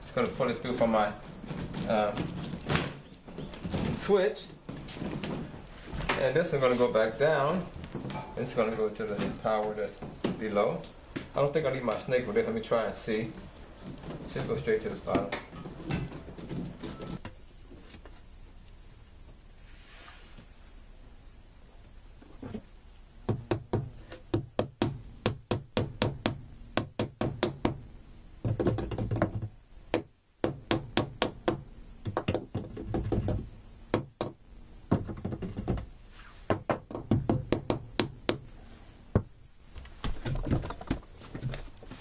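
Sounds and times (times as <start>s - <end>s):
knocking and tapping inside wall: 23.3s - 27.8s, 28.4s - 35.9s, 36.5s - 38.5s, 39.2s - 39.4s.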